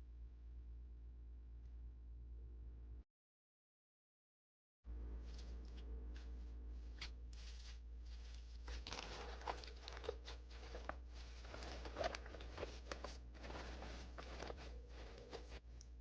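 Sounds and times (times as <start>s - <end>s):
steady low hum: 0.0s - 3.0s, 4.9s - 16.0s
food handling rustling: 7.3s - 15.9s.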